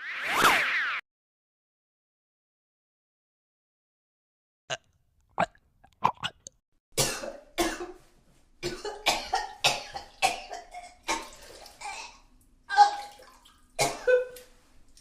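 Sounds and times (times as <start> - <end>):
person coughing: 7.0 - 8.0, 8.6 - 12.2, 13.8 - 14.4.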